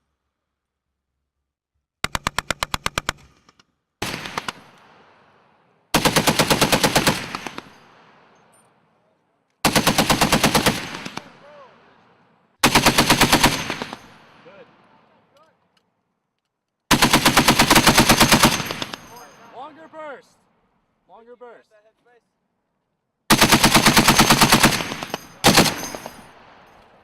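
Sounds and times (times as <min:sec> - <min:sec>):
gunfire echo: 0:04.0 - 0:08.5, 0:09.7 - 0:15.2, 0:16.9 - 0:19.6, 0:23.3 - 0:27.0
machine gun bursts: 0:06.0 - 0:07.8, 0:12.6 - 0:14.1, 0:16.9 - 0:19.3, 0:23.3 - 0:26.3.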